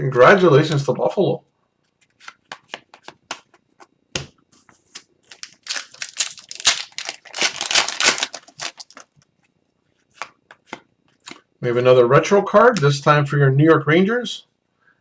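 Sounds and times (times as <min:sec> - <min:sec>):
cards rustling and sliding: 0:04.6 - 0:09.1
cards clicking and snapping: 0:05.3 - 0:09.1.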